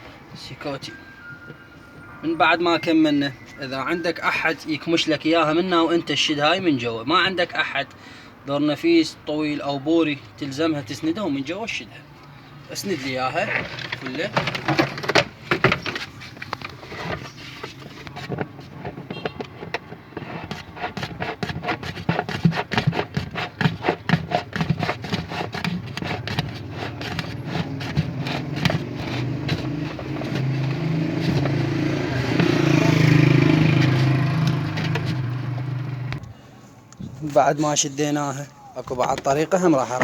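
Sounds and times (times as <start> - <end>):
metallic clicking and scraping: 12.9 - 36.3
steady engine-like hum: 25.6 - 36.3.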